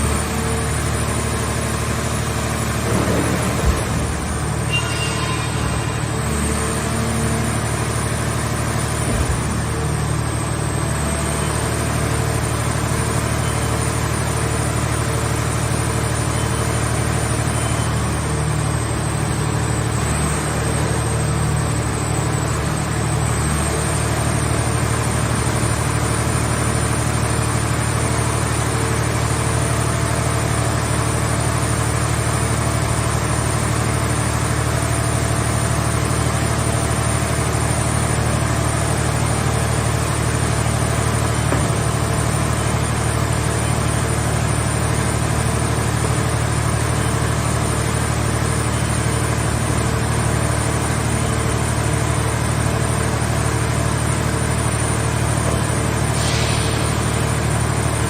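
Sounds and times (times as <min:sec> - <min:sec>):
engine running steadily: 0:00.0 - 0:58.0
thin high whine: 0:04.0 - 0:06.3.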